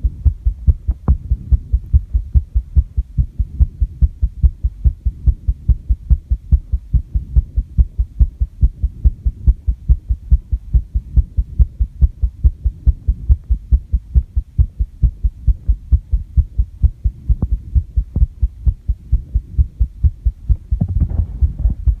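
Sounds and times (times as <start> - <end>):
human heartbeat: 0.0 - 22.0.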